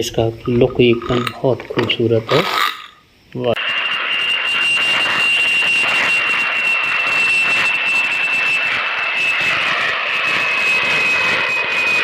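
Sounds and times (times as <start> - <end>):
jet engine whine: 3.1 - 12.0.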